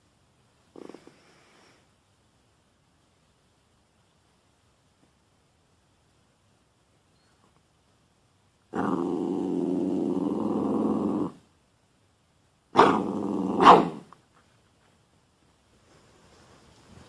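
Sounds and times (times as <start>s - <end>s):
dog growling: 0.7s - 1.4s, 8.7s - 11.5s, 12.8s - 14.1s.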